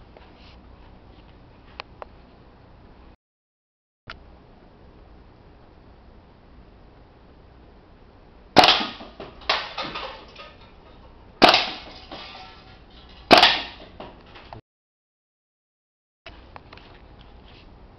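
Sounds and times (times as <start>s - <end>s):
airsoft gun shots echoing: 8.6s - 9.9s, 11.4s - 11.9s, 13.3s - 13.8s.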